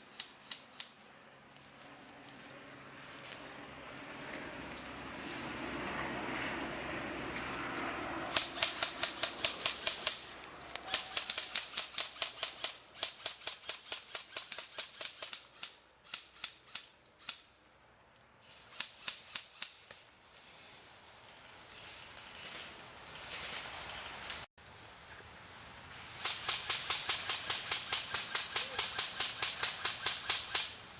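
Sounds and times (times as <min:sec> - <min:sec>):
airsoft guns firing bursts: 0:08.3 - 0:10.2, 0:10.9 - 0:15.7, 0:26.2 - 0:30.8.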